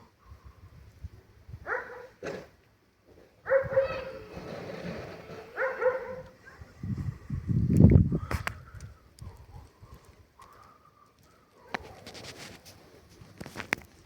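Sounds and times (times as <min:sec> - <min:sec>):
dog barking: 0:01.7 - 0:02.2, 0:03.4 - 0:04.1, 0:05.6 - 0:06.6.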